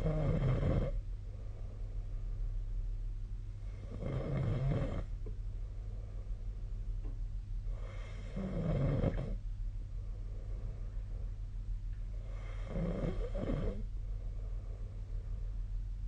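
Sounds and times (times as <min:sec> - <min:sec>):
person snoring: 0:00.0 - 0:01.0, 0:03.8 - 0:05.1, 0:07.7 - 0:09.4, 0:12.2 - 0:13.9
steady low hum: 0:00.0 - 0:16.0.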